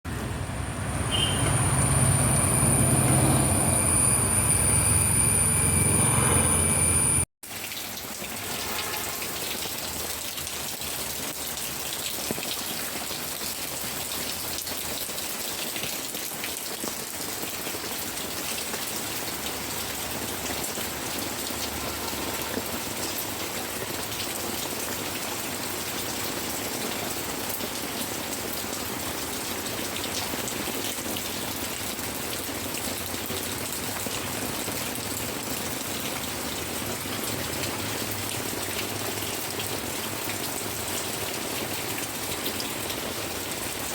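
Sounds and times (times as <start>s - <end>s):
steady tones: 0.1s - 7.2s.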